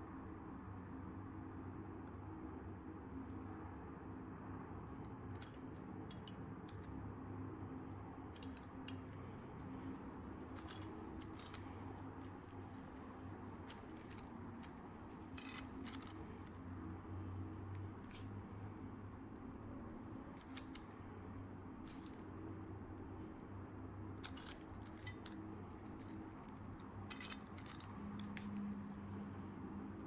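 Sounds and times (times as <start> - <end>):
steady low hum: 0.0 - 30.0
plastic puzzle cube clicks: 10.5 - 13.0, 13.7 - 16.6, 20.4 - 20.9.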